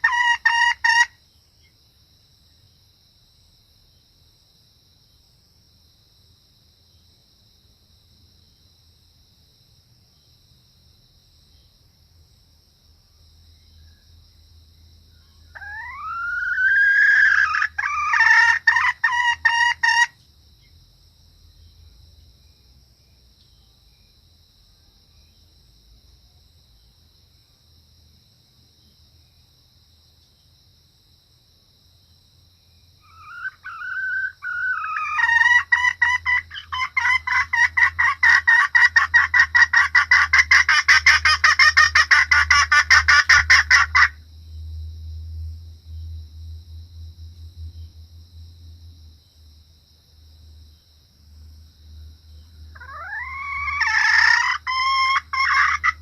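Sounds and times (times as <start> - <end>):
junglefowl hen squawking and clucking: 0.0 - 1.1, 15.5 - 20.1, 33.0 - 44.2, 52.7 - 56.0.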